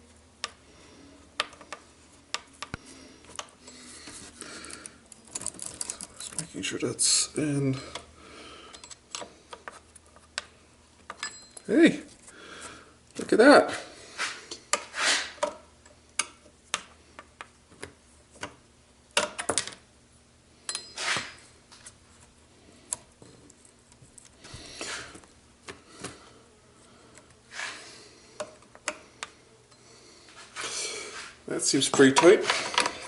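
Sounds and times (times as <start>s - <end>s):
metal clicks and clinks: 4.8s - 6.6s.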